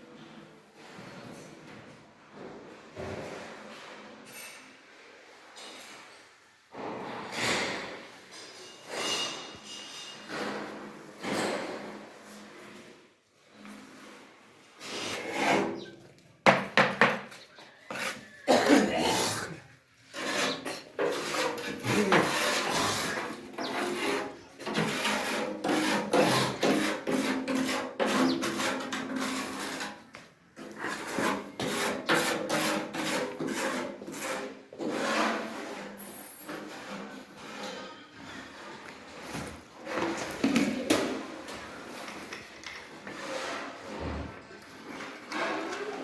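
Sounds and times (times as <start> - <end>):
rough surface being scraped: 7.0 - 16.0, 17.8 - 40.2, 41.6 - 46.0.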